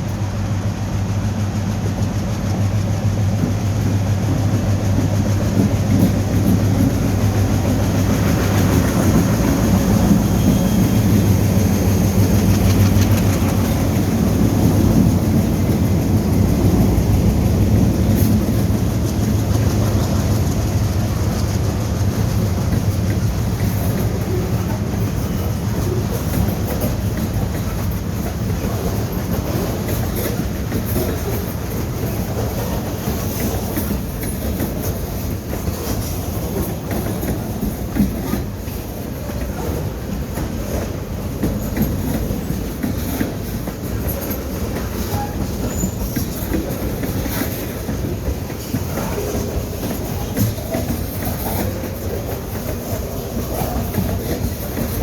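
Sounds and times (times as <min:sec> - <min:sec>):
train wheels rumbling and clacking: 0:00.0 - 0:55.0
faint wheel squeals: 0:08.6 - 0:13.8, 0:43.9 - 0:47.7.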